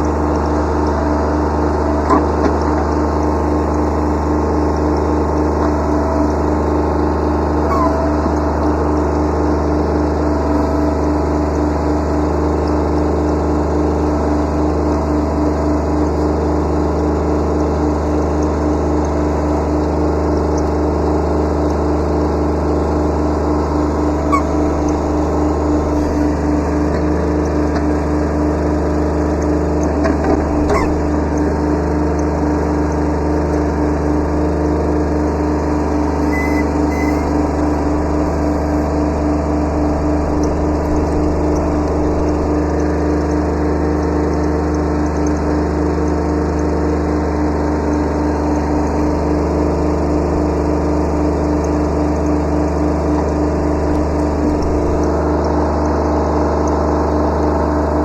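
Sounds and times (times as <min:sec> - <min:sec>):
tractor diesel engine running: 0:00.0 - 0:58.0
faint short squeaks: 0:07.5 - 0:09.0, 0:24.0 - 0:27.0, 0:30.2 - 0:31.5, 0:35.7 - 0:42.5.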